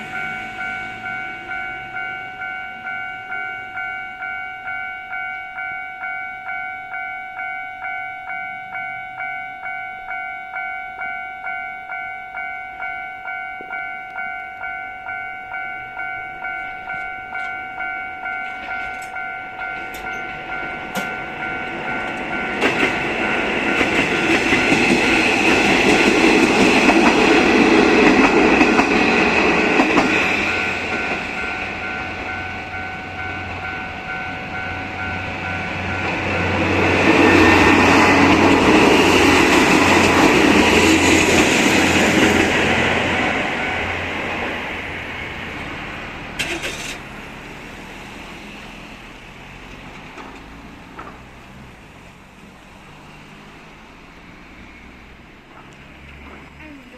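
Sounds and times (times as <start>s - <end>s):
level-crossing bell ringing: 0.0s - 44.9s
train wheel and engine noise: 0.0s - 56.9s.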